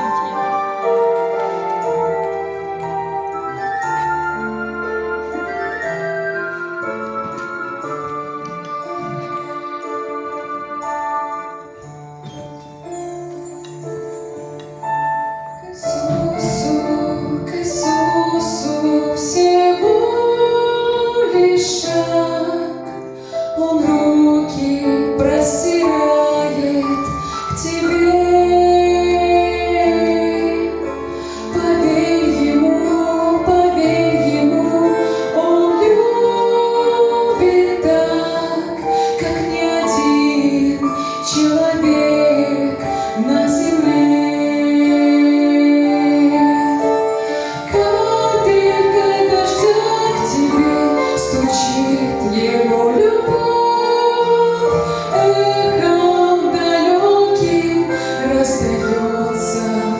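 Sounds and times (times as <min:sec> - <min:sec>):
instrumental accompaniment: 0:00.0 - 0:59.9
woman singing: 0:15.6 - 0:59.9.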